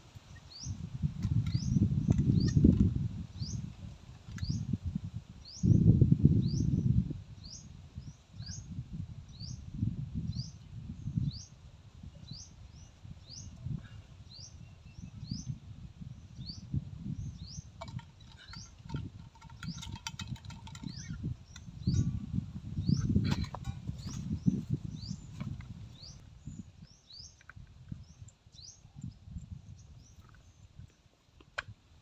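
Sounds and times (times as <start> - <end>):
wind on microphone: 0.0 - 32.0.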